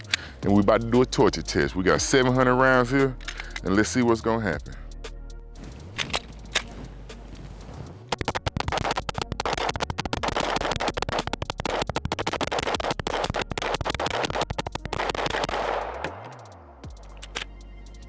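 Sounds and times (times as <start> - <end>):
pistol rapid fire: 8.2 - 16.2.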